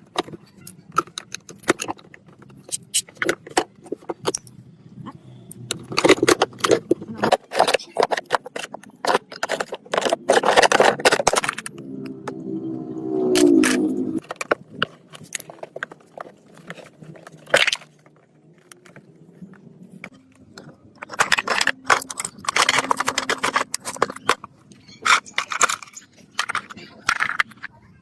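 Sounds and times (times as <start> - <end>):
metal tools clinking and scraping: 5.7 - 12.4, 13.4 - 27.8.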